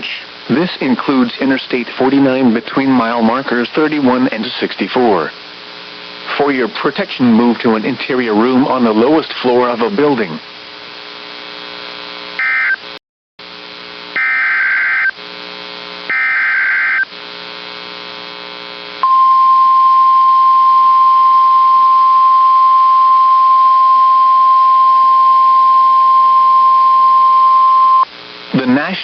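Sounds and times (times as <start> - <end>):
buzzing hum: 7.2 - 28.9
digital data tone bursts: 12.4 - 12.8, 14.2 - 15.2, 16.1 - 17.1
single-pitch warning alarm tone: 12.4 - 12.8, 14.2 - 15.2, 16.1 - 17.1, 19.0 - 28.1.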